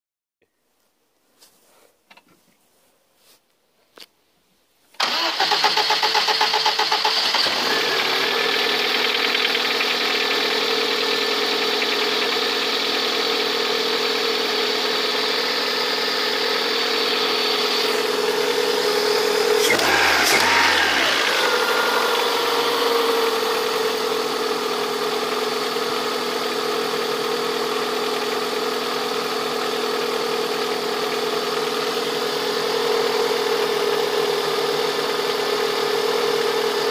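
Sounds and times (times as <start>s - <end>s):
engine revving: 5.0s - 11.8s, 17.0s - 25.5s
car engine starting and idling: 5.0s - 36.9s.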